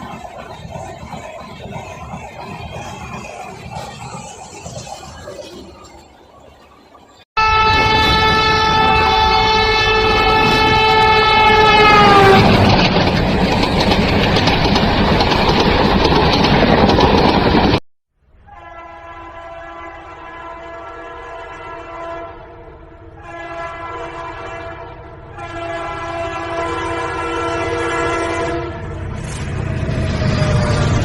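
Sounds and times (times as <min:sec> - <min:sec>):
passing train rumble and clatter: 0:00.0 - 0:17.8, 0:18.4 - 0:31.0
train horn blast: 0:07.4 - 0:12.6, 0:18.4 - 0:22.6, 0:23.2 - 0:31.0.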